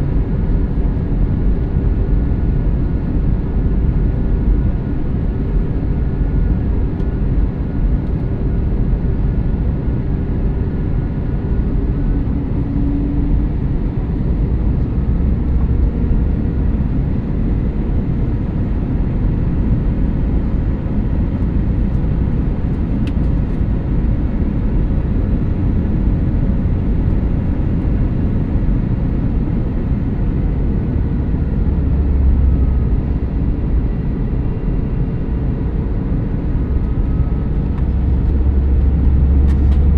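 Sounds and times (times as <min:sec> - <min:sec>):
airliner cabin engine rumble: 0:00.0 - 0:39.9
faint steady engine tones: 0:00.0 - 0:39.9.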